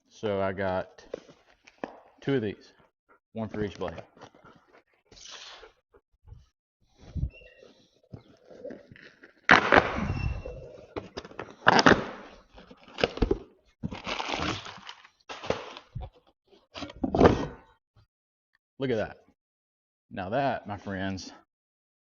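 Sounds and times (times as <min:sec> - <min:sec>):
packaging crinkling: 0:12.7 - 0:15.9.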